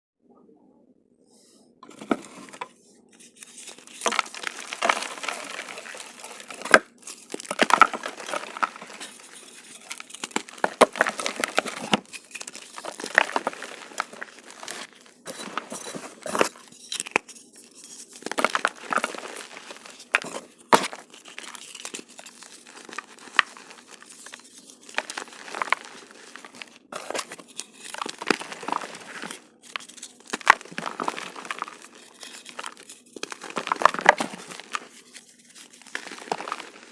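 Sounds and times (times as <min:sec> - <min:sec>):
chalk crunching and crumbling: 0:01.9 - 0:36.9.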